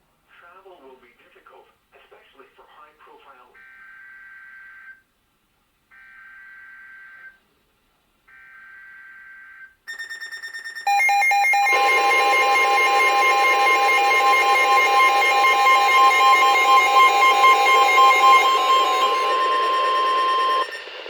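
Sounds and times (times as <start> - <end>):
loud steady alert tone: 9.9 - 21.0
rapid beeping: 9.9 - 21.0
warbling digital data tones: 9.9 - 21.0.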